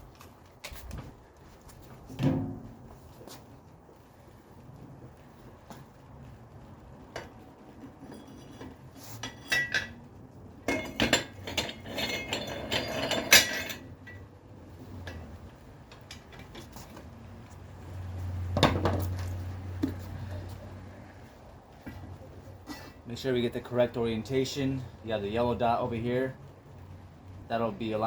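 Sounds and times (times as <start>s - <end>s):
metal tools clinking: 8.0s - 10.0s, 10.7s - 14.2s.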